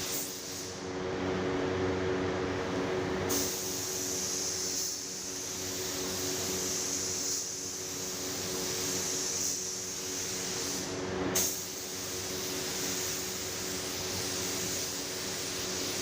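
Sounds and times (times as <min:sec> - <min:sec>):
air spray gun hissing: 0:00.0 - 0:00.8, 0:03.3 - 0:16.0
air compressor humming: 0:00.0 - 0:16.0.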